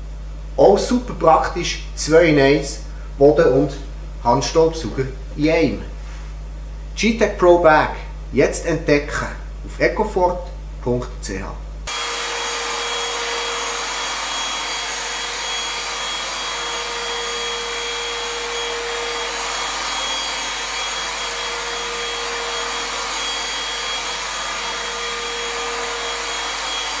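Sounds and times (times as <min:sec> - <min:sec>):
vacuum cleaner motor whining: 0:11.9 - 0:27.0.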